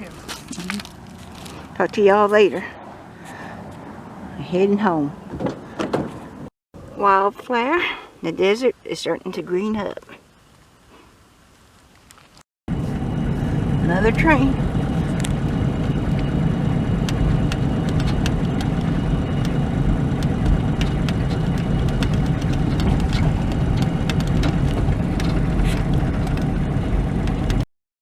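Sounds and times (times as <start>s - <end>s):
vehicle engine and road noise: 0.0s - 27.7s
small rattles and clicks: 20.2s - 26.6s.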